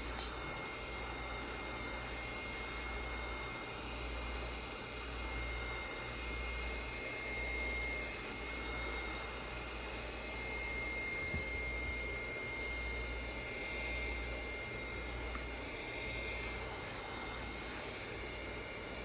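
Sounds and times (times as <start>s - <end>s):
heat gun blowing with high whine: 0.0s - 19.0s.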